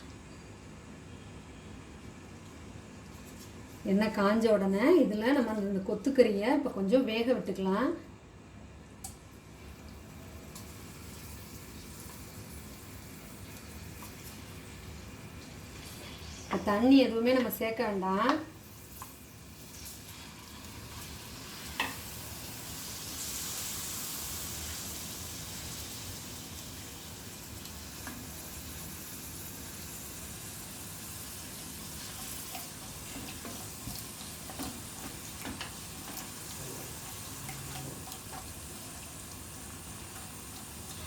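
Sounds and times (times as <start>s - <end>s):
meat sizzling in hot oil: 9.4s - 16.8s, 18.5s - 41.0s.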